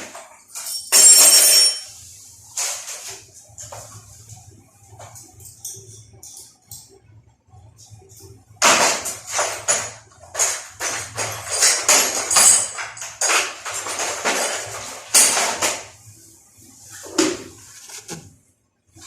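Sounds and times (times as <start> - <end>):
faint low hum: 3.2 - 10.7
rattling and scraping of machine parts: 8.2 - 16.0.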